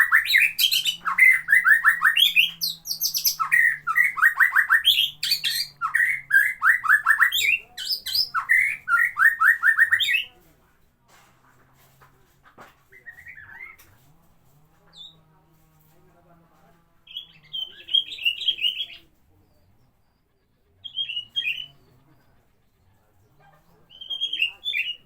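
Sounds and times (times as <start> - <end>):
songbird singing: 0.0 - 10.3, 17.1 - 20.0, 20.8 - 22.0, 23.8 - 25.0.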